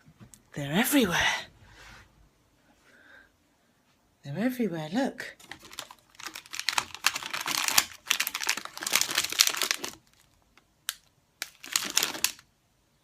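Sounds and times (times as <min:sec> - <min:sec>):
plastic wrappers crinkling: 0:05.4 - 0:12.5.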